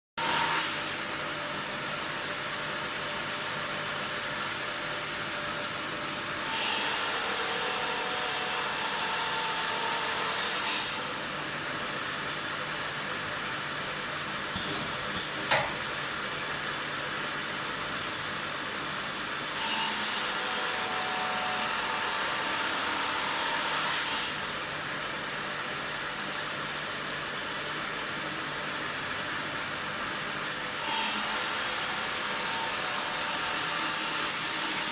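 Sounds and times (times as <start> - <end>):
wire making machine running: 11.0 - 19.6.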